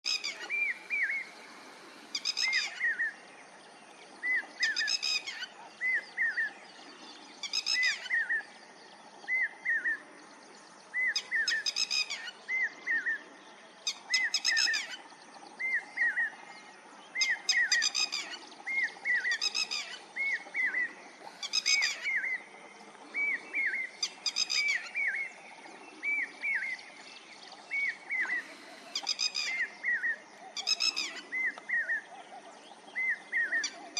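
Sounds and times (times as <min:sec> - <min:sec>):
lapwing rattling call: 0:19.1 - 0:22.4, 0:23.2 - 0:25.2, 0:27.8 - 0:31.9
lapwing sharp calls: 0:19.2 - 0:22.4.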